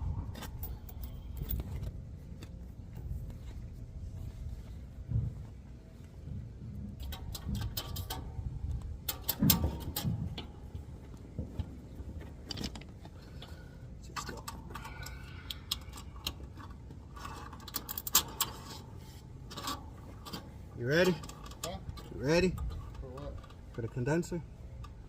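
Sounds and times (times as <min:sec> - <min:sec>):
hand tools clicking and clinking: 0:19.5 - 0:24.2.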